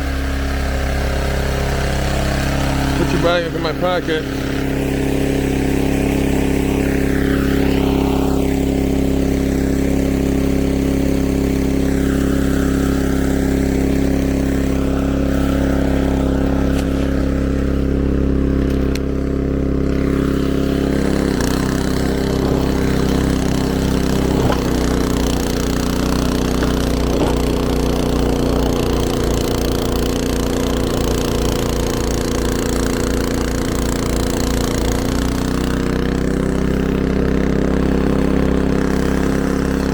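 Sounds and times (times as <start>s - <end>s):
snowblower engine running: 0.0s - 39.9s.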